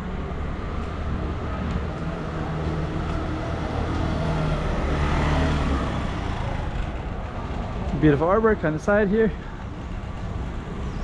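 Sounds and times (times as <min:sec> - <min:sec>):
car engine passing: 0:00.0 - 0:08.4.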